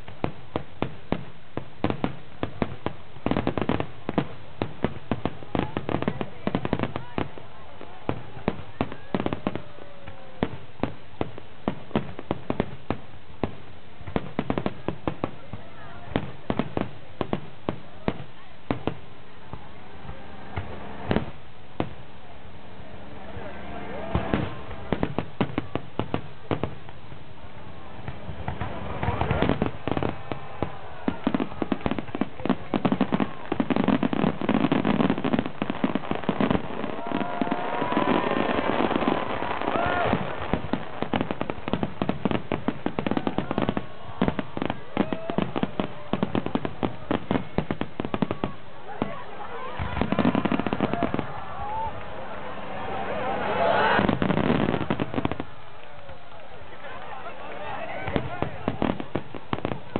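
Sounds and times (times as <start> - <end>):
background noise: 0.0 - 59.9
fireworks bangs: 0.0 - 59.9.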